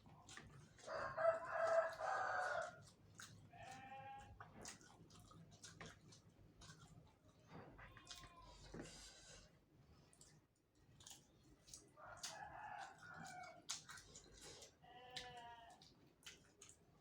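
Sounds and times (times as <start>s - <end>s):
person chewing and biting: 0.0s - 9.3s, 10.1s - 14.8s
rooster crowing: 0.9s - 2.8s.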